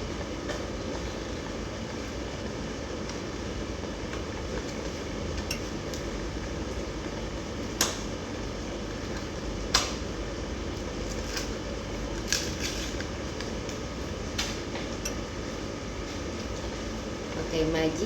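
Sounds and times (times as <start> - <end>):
steady low hum: 0.0 - 18.0
spoon clinking against pan: 5.5 - 5.7.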